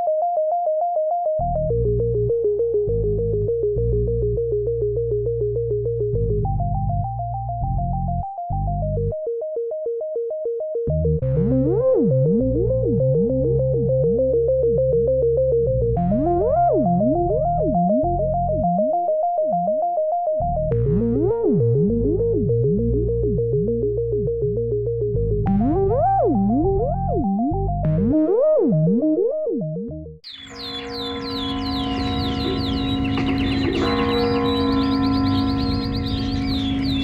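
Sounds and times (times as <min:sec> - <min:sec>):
fast sweeping synth notes: 0:30.3 - 0:37.0
steady synth bass: 0:30.3 - 0:37.0
synthesizer keyboard notes: 0:30.3 - 0:37.0.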